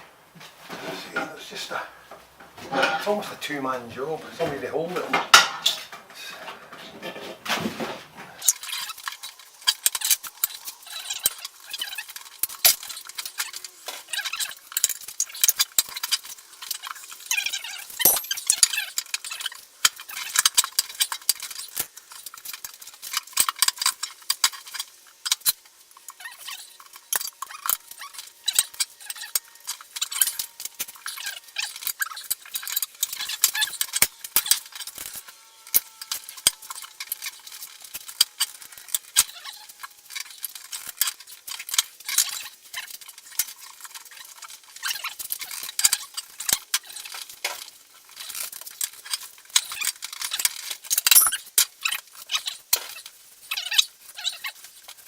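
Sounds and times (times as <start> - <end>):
tools clicking and scraping on rim: 17.8 - 53.1
rubber squeaks: 26.0 - 40.4, 51.1 - 54.6.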